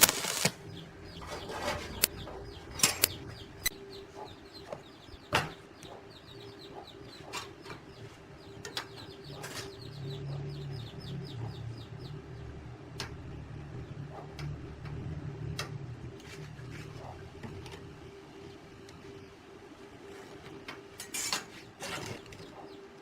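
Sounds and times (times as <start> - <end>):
birds chirping: 0.0 - 14.7, 21.9 - 23.0
sharp clicks: 2.0 - 3.8.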